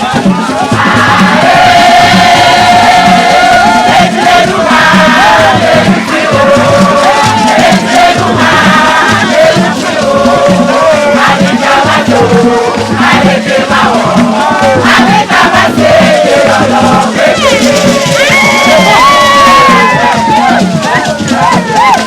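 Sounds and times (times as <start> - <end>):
crowd chanting: 0.0 - 22.0
rhythmic percussion: 0.0 - 22.0.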